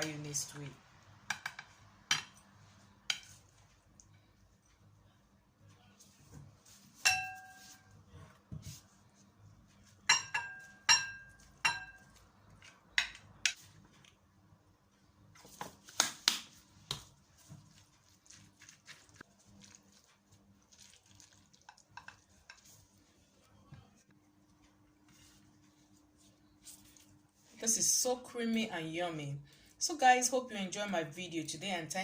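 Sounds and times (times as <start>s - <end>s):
spoon clinking against plate: 7.0s - 7.8s, 10.0s - 12.2s.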